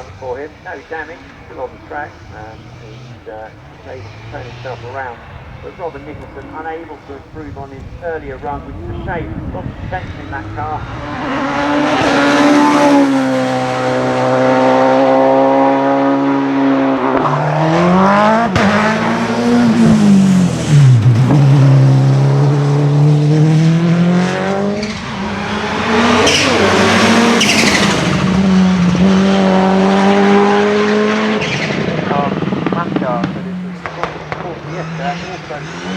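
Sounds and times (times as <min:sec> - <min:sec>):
racing car engine: 0:00.0 - 0:35.9
sharp crack: 0:31.6 - 0:35.9.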